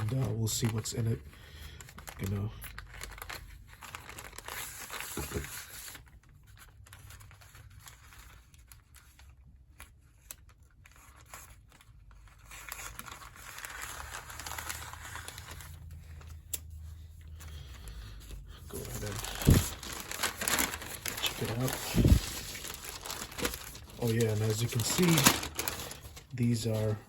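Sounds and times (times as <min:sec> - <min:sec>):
packaging crinkling and rustling: 0:00.0 - 0:27.0
package being torn open: 0:06.9 - 0:16.4, 0:18.7 - 0:26.9.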